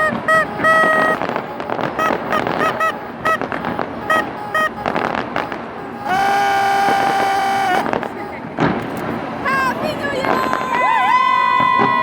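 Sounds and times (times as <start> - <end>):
long steady horn blast: 0.0 - 9.3
horns tooting: 0.0 - 9.8
crowd noise: 0.0 - 11.7.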